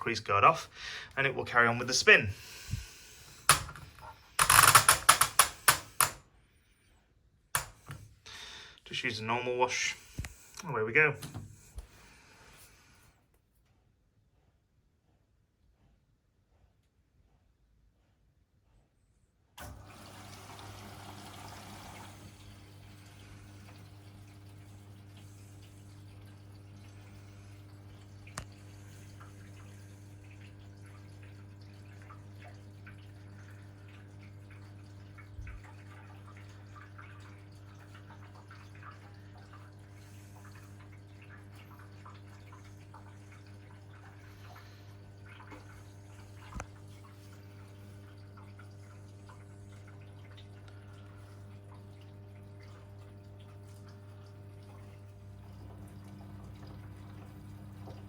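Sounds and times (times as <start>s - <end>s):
water splashing into washing machine: 0.0s - 6.2s, 7.6s - 8.2s, 19.6s - 58.0s
washing machine low hum: 0.0s - 6.6s, 8.9s - 13.0s, 19.6s - 58.0s.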